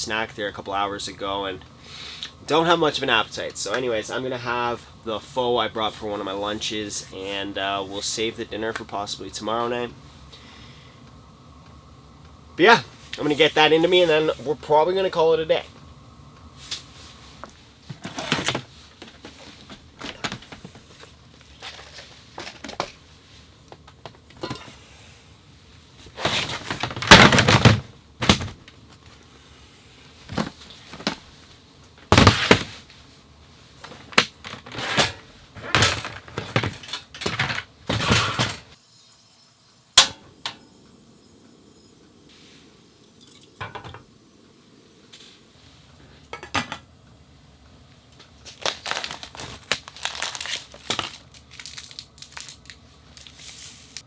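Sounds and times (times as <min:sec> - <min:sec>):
low background noise: 0:00.0 - 0:54.0
camp gear clattering: 0:17.5 - 0:23.0, 0:26.0 - 0:28.8, 0:32.0 - 0:33.0, 0:33.8 - 0:38.8.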